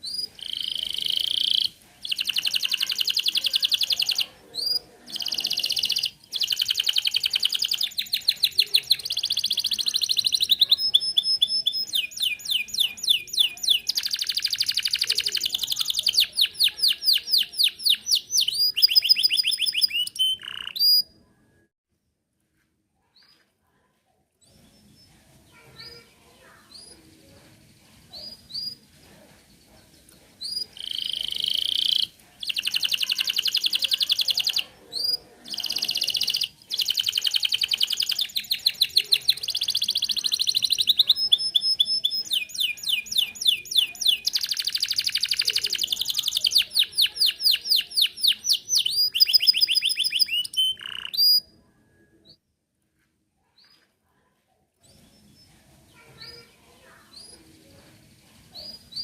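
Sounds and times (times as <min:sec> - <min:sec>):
canary singing trills: 0:00.0 - 0:21.4, 0:29.9 - 0:52.4
faint bird chirps: 0:00.0 - 0:21.7, 0:24.4 - 0:52.5, 0:54.8 - 0:59.0.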